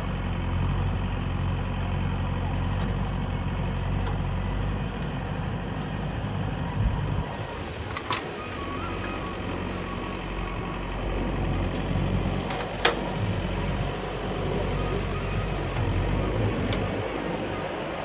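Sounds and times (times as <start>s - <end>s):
digging machine diesel engine: 0.0s - 18.0s.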